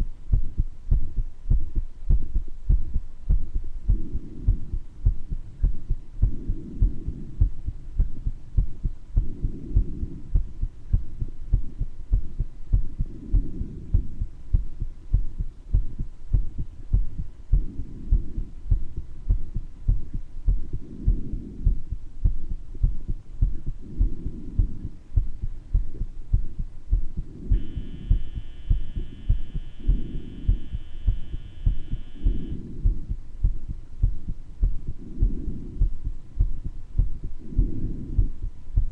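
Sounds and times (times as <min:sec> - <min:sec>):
heartbeat thumps: 0:00.0 - 0:38.9
breath sounds: 0:03.8 - 0:27.6, 0:34.0 - 0:38.5.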